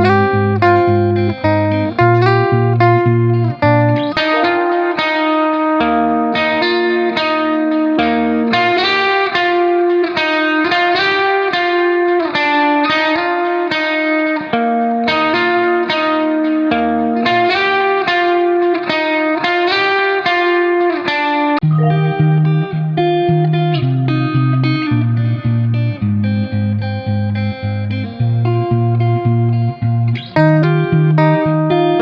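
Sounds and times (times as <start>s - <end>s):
soft low bass line: 0.0s - 4.2s
plucked guitar melody: 0.0s - 32.0s.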